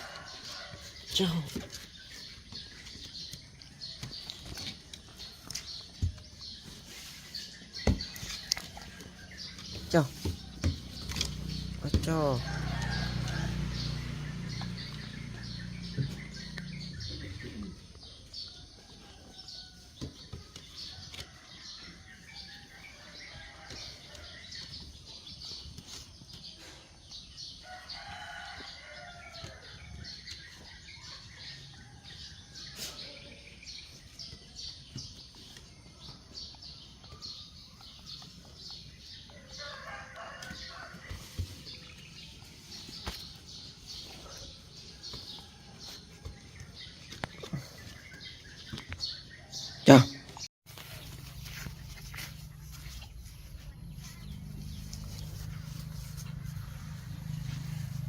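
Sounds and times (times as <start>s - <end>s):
rooster crowing: 0.0s - 0.9s, 12.2s - 15.9s
small birds chirping: 0.0s - 58.0s.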